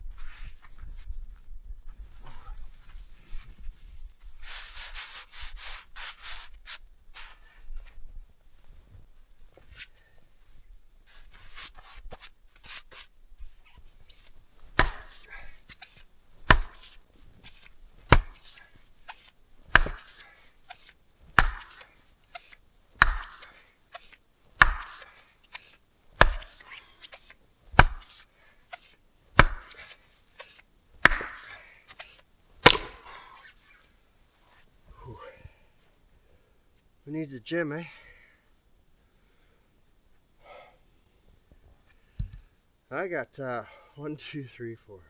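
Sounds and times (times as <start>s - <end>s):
axe chopping log: 14.7s - 20.2s, 20.8s - 27.2s, 27.8s - 28.2s, 28.8s - 33.2s.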